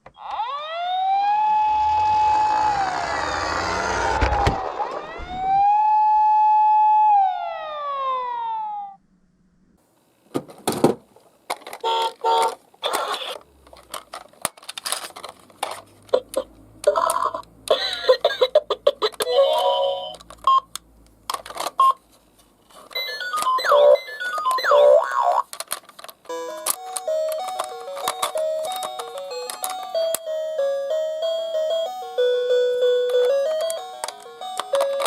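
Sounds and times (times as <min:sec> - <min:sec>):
siren: 0:00.2 - 0:09.0.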